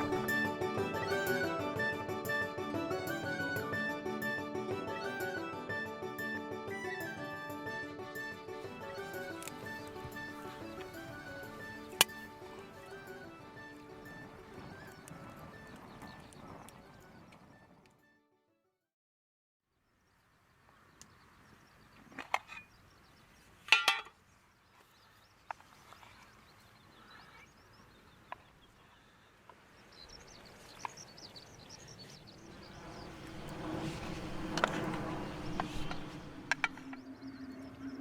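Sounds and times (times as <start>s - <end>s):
steady low hum: 32.4s - 36.9s
rush of noise: 32.4s - 37.0s.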